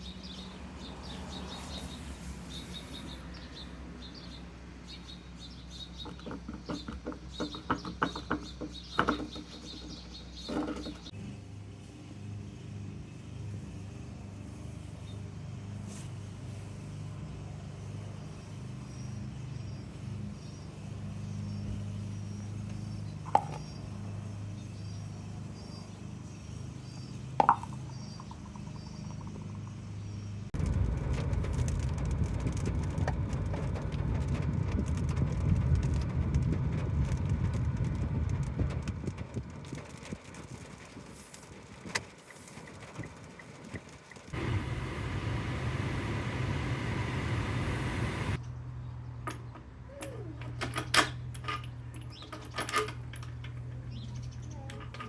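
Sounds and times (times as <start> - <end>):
faint bird chirps: 25.6 - 30.4
lawnmower engine running: 44.3 - 48.4.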